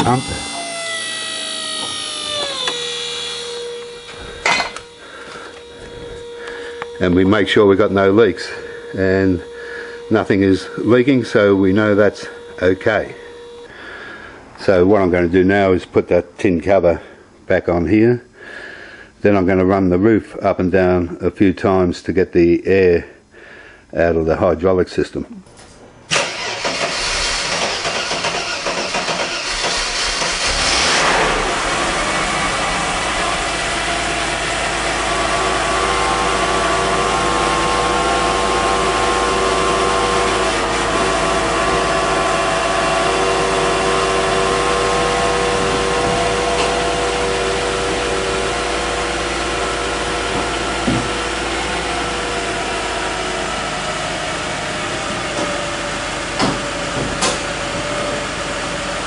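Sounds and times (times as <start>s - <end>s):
hydraulic pump whine: 0.0s - 15.8s, 25.5s - 59.0s
car engine idling: 26.1s - 59.0s.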